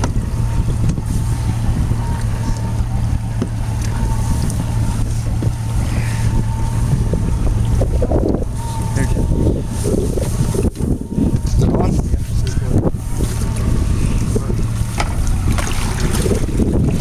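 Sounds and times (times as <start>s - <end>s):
boat engine idling: 0.0s - 17.0s
wind buffeting microphone: 0.0s - 17.0s.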